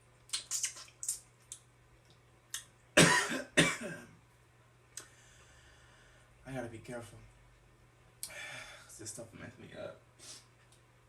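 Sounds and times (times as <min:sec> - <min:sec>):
eating mouth clicks: 0:00.3 - 0:01.7
man coughing: 0:03.0 - 0:04.1.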